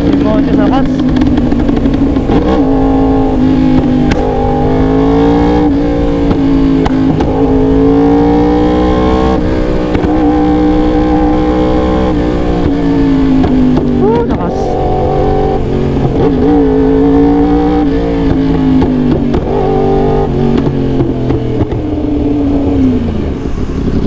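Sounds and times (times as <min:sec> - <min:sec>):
exhaust backfire pops: 0:00.0 - 0:02.7, 0:03.7 - 0:04.4, 0:06.2 - 0:07.5, 0:09.8 - 0:10.2, 0:18.2 - 0:19.8, 0:20.4 - 0:21.9
motorcycle engine revving: 0:00.0 - 0:24.0.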